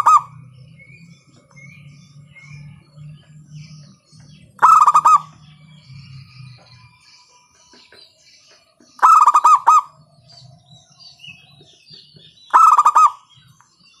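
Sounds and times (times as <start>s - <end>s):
dove cooing: 0.0s - 0.3s, 4.6s - 5.4s, 9.0s - 10.0s, 12.5s - 13.3s.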